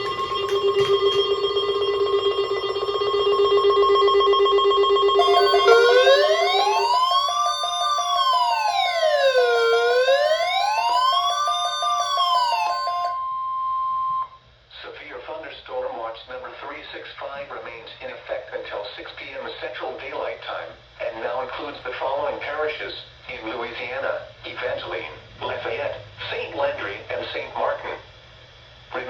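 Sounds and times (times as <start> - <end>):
low buzzing tone: 0.0 - 8.4, 13.1 - 14.4
steady high alarm tone: 0.0 - 14.4
wailing siren tone: 0.0 - 14.4.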